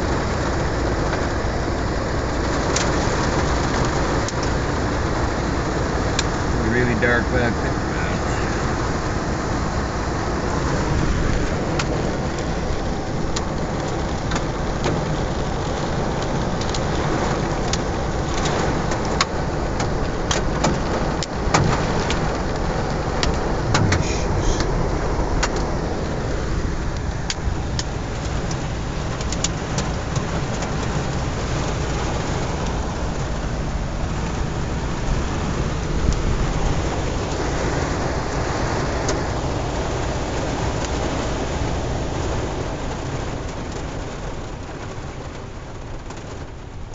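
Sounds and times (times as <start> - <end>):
heavy rain on a vehicle roof: 0.0 - 46.9.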